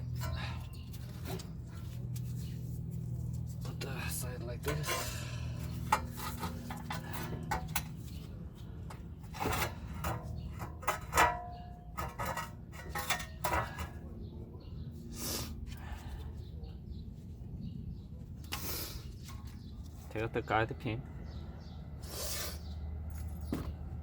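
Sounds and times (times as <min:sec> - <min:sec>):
steady low hum: 0:00.0 - 0:24.0
metal tools clinking: 0:04.6 - 0:08.2.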